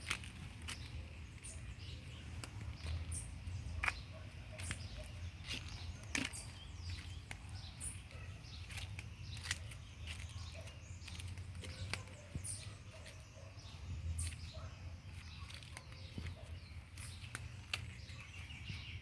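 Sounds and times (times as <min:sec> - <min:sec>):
footsteps crunching on dry leaves: 0:00.0 - 0:19.0
wind rumble on microphone: 0:13.6 - 0:19.0.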